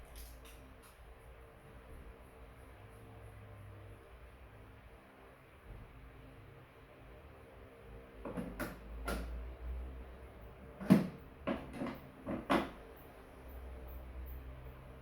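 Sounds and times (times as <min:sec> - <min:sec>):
fan parts knocking and clattering: 0:08.2 - 0:09.4, 0:10.8 - 0:12.9.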